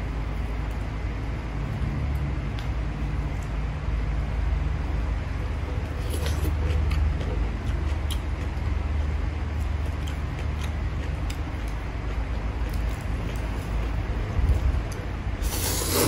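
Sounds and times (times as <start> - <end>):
steady low rumble: 0.0 - 15.8
eating mouth sounds and clicks: 6.1 - 14.0.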